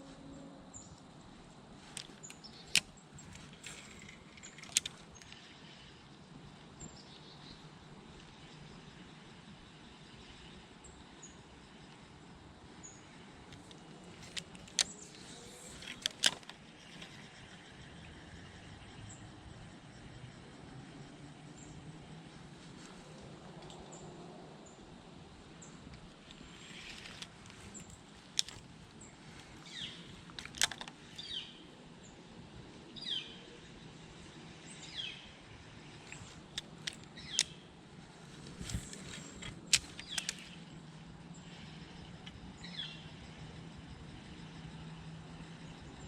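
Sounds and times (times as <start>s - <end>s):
low steady background noise: 0.0s - 46.0s
sharp clicks: 1.9s - 5.5s, 13.5s - 17.3s, 25.6s - 31.4s, 35.8s - 37.7s, 38.4s - 40.7s
bird calling: 25.6s - 32.2s, 36.0s - 37.8s, 38.5s - 40.7s.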